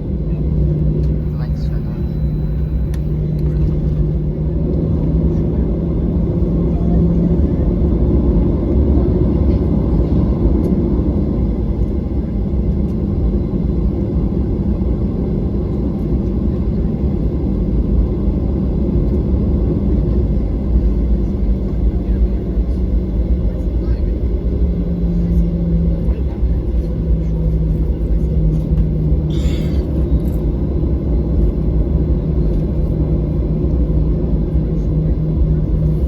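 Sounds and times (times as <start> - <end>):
airplane cabin rumble while taxiing: 0.0 - 36.0
low hum: 0.0 - 36.0.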